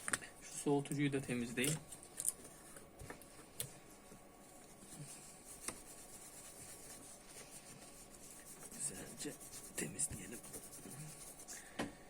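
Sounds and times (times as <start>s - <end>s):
rubbing on metal heatsink: 4.8s - 11.5s.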